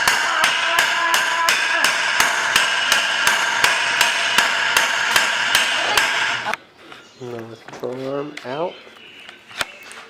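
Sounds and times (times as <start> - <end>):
hammer striking metal: 0.0 - 6.6.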